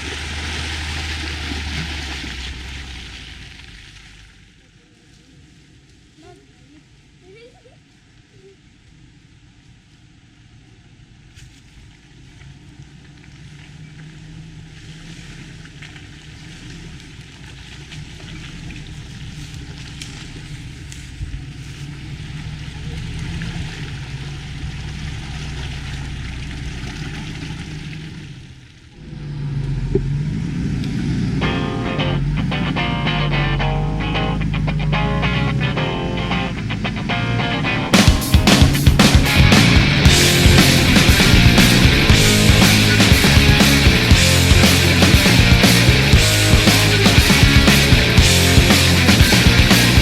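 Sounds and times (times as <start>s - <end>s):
off-road vehicle engine running: 0.0s - 4.4s, 11.8s - 50.0s
electric guitar music: 31.4s - 50.0s.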